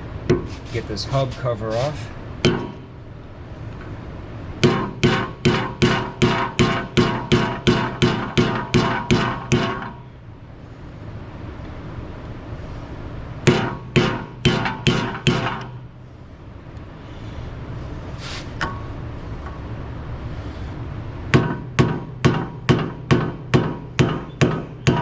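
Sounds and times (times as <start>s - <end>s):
hammer blows on metal: 4.6s - 10.0s, 13.5s - 15.8s.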